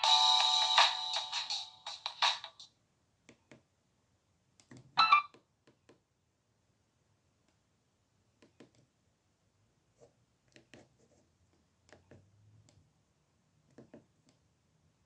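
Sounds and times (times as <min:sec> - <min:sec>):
phone ringtone: 0:00.0 - 0:02.6.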